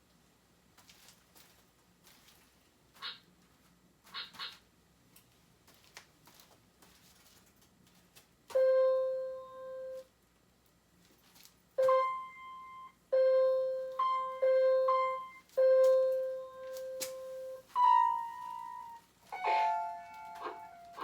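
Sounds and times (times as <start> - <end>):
electronic floor keyboard tune: 8.5 - 10.1, 11.8 - 21.0.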